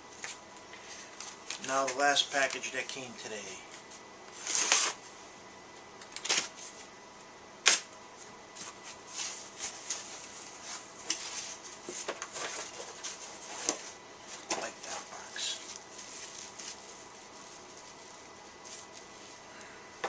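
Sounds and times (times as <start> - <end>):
plastic wrap crackling: 15.4 - 19.2.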